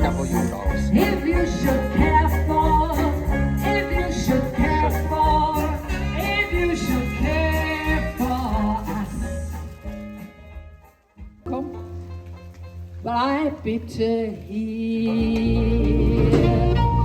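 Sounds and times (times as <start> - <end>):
upbeat music with bass line: 0.0 - 13.3.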